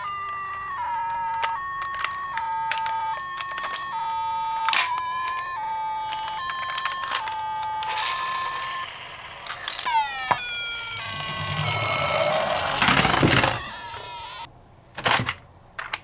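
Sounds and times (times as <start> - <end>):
toy ambulance two-tone siren: 0.0 - 14.5
falling electronic tone: 7.8 - 14.5.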